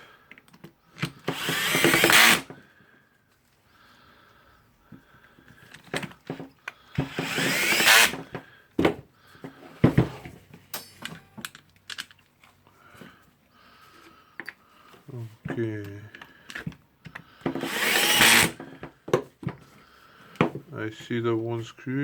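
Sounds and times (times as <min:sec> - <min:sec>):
power screwdriver driving screw: 0:01.0 - 0:02.5, 0:07.0 - 0:08.3, 0:17.5 - 0:18.6
metal tools clicking and knocking: 0:10.7 - 0:12.3.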